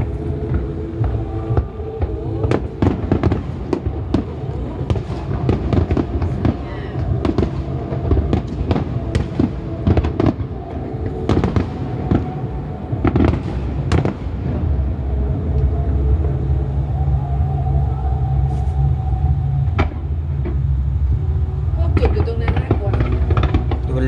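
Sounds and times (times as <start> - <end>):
fireworks bangs and crackles: 0.0 - 16.2, 21.9 - 24.0
steady low rumble: 0.0 - 24.0.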